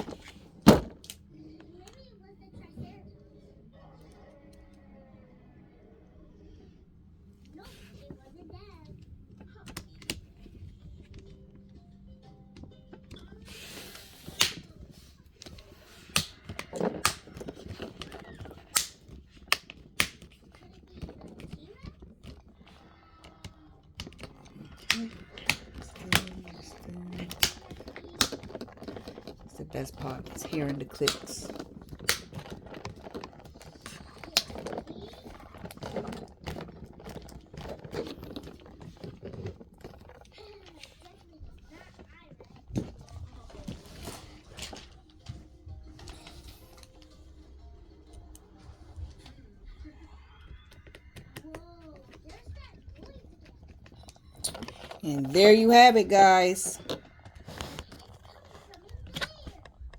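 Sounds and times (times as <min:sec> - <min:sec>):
handling rustle: 0:12.6 - 0:49.7, 0:50.8 - 0:59.9
plastic case clips snapping: 0:14.3 - 0:14.7, 0:15.4 - 0:20.5, 0:24.0 - 0:34.8.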